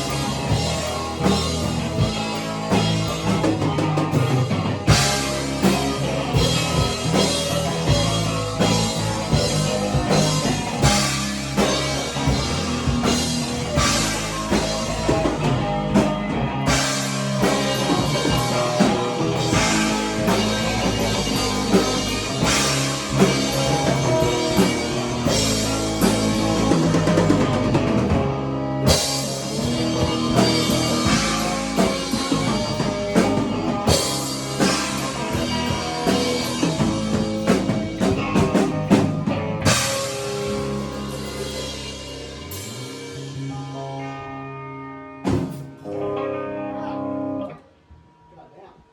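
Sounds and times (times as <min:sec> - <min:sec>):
rock music with drums and guitar: 0:00.0 - 0:47.9.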